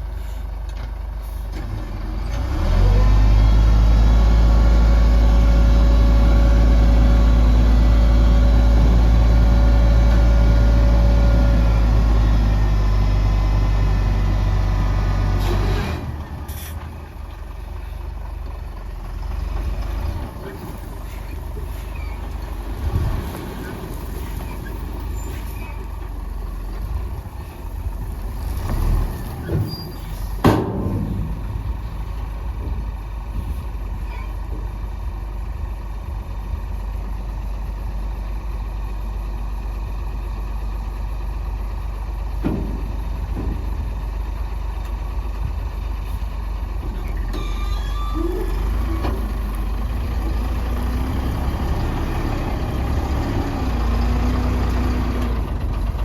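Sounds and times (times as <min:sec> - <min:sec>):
heavy diesel machinery rumbling: 0:00.0 - 0:56.0
sudden sharp bang: 0:30.4 - 0:32.0.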